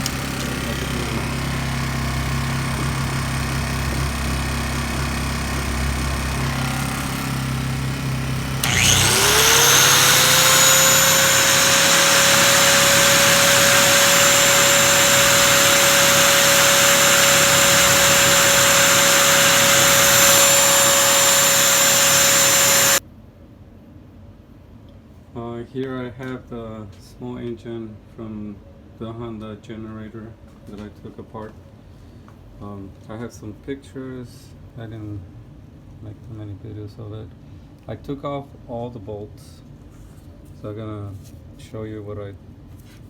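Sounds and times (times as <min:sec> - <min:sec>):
generator engine humming: 0:00.0 - 0:23.0
high-speed motor whine: 0:00.0 - 0:23.0.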